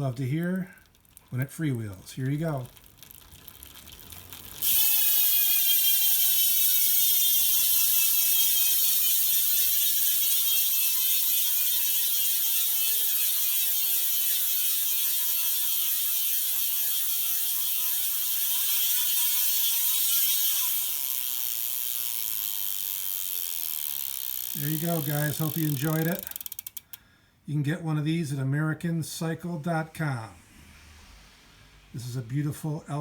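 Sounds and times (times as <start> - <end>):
bicycle freewheel hub buzzing: 0.6 - 1.4, 2.2 - 27.0.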